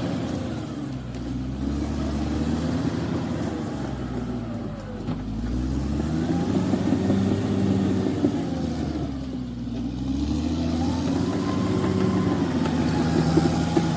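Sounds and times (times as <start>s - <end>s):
heavy machinery engine revving: 0.0s - 13.9s.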